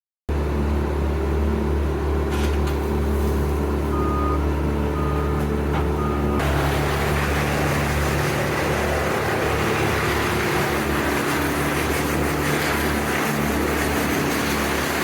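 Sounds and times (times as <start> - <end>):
wood chipper engine running: 0.3 - 15.0
reversing alarm beeps: 3.9 - 6.4.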